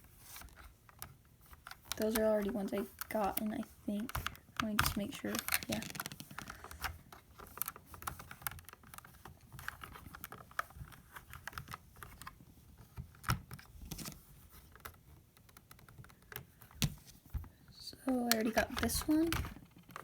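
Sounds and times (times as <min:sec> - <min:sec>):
plastic toy parts clicking: 0:00.9 - 0:12.3.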